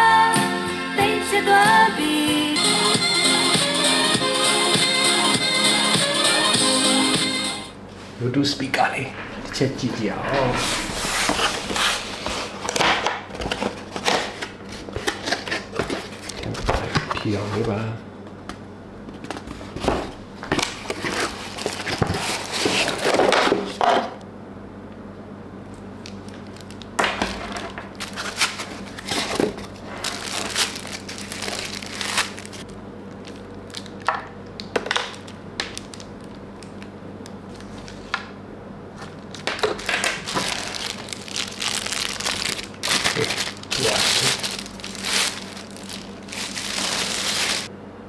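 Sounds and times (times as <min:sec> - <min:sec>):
packaging crinkling and rustling: 0:08.7 - 0:18.0, 0:19.1 - 0:24.1, 0:25.8 - 0:38.2, 0:39.0 - 0:47.7.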